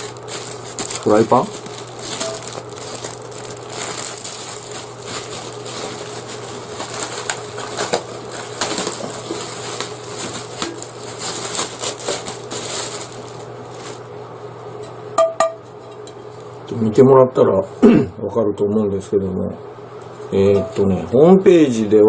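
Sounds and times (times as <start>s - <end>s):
packaging wrap crinkling: 0.0s - 14.2s
low steady hum: 0.0s - 22.0s.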